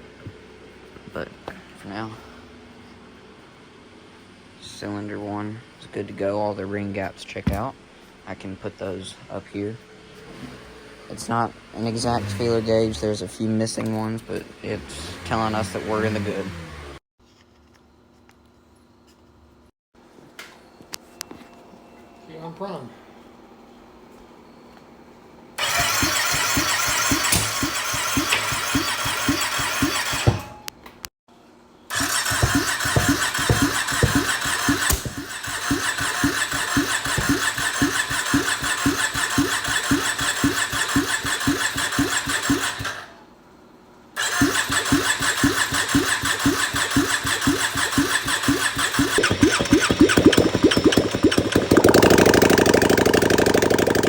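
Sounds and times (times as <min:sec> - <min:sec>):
engine cranking with starter: 0:25.6 - 0:30.5, 0:31.9 - 0:43.2, 0:44.2 - 0:54.0.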